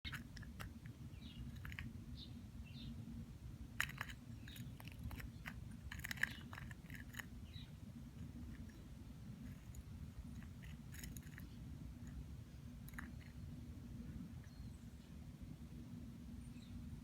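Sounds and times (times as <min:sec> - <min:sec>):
cat crunching dry food: 0:00.1 - 0:02.0, 0:03.7 - 0:13.5
low steady hum: 0:00.1 - 0:17.0.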